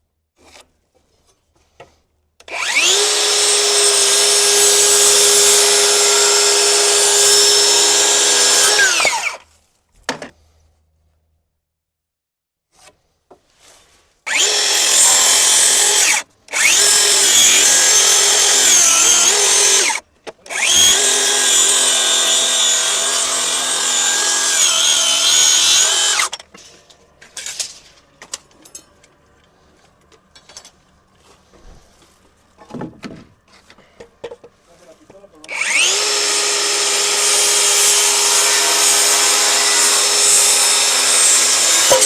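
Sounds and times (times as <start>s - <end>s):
power tool running: 2.5s - 9.4s, 14.3s - 26.4s, 35.5s - 42.0s.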